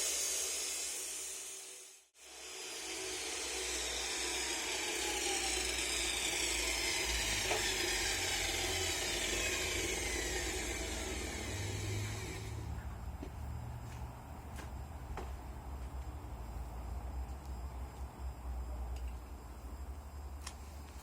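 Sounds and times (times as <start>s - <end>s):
power tool whining: 0.0s - 12.8s.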